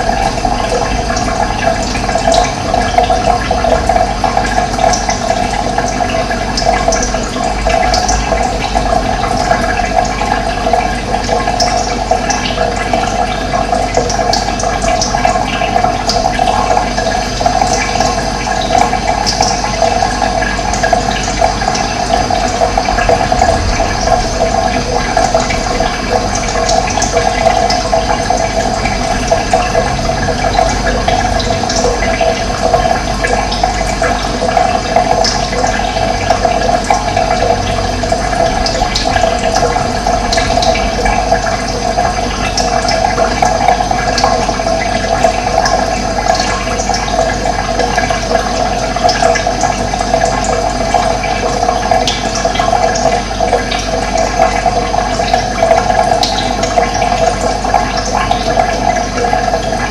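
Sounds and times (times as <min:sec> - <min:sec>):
running water rushing: 0:00.0 - 0:59.9.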